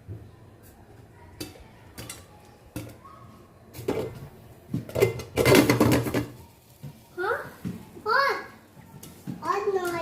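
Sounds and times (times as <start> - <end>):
popcorn kernels popping: 3.8 - 7.0.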